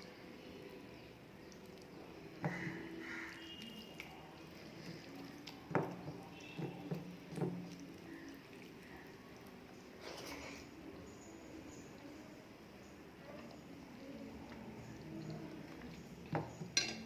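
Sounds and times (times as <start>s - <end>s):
wet clicks and squishes: 1.4s - 9.8s
person chewing food: 1.5s - 10.8s.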